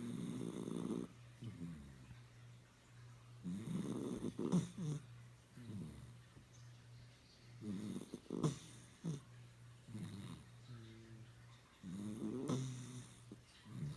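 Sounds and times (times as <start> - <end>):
puppy snoring: 0.0 - 2.2, 3.4 - 6.2, 7.6 - 9.3, 9.9 - 11.0, 11.8 - 13.9.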